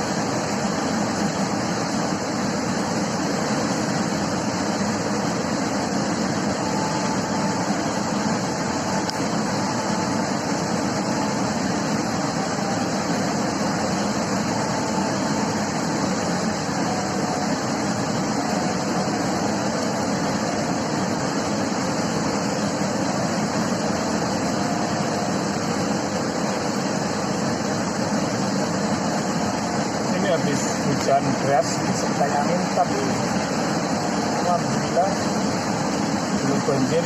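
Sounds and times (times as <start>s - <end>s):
river water rushing: 0.0s - 37.0s.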